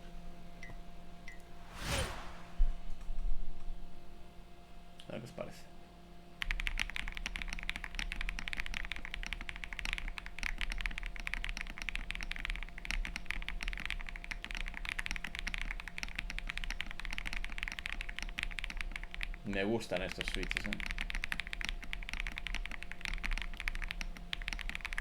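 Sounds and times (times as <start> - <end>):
fast typing on mechanical keyboard: 6.4 - 25.0.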